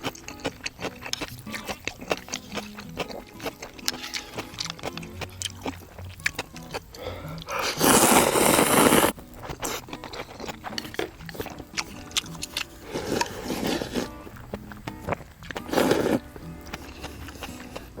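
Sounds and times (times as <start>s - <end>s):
soft background music: 0.0s - 7.5s, 9.0s - 18.0s
wet chewing clicks: 0.0s - 18.0s
slurping noodles: 6.9s - 14.2s, 15.1s - 18.0s.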